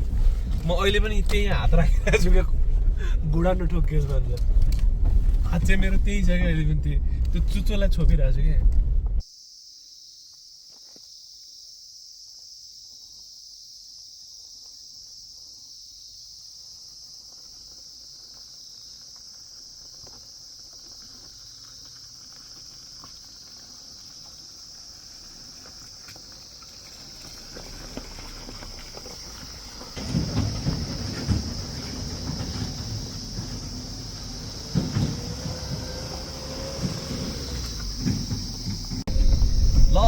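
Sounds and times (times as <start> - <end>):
low rumble: 0.0 - 9.2, 36.2 - 40.0
insects buzzing: 9.2 - 40.0.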